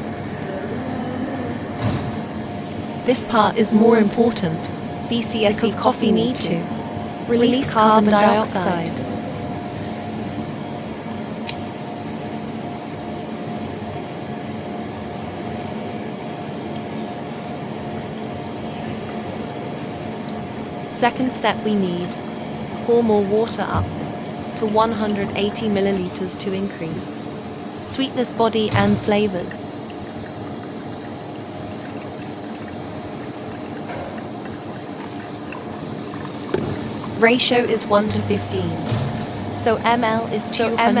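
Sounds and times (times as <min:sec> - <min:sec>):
small appliance humming: 0:00.0 - 0:41.0
water pouring from kettle: 0:16.2 - 0:25.3, 0:29.7 - 0:37.2.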